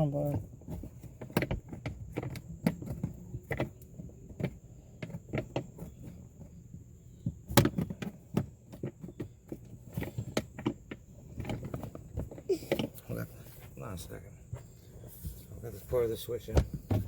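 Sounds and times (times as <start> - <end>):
plastic parts clicking and knocking: 0.2 - 13.0.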